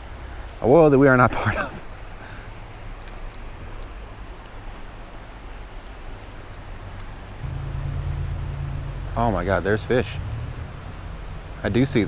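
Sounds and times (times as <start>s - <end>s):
high insect drone: 0.0s - 12.0s
mountain creek rushing: 6.1s - 12.0s
low rumble: 7.4s - 12.0s.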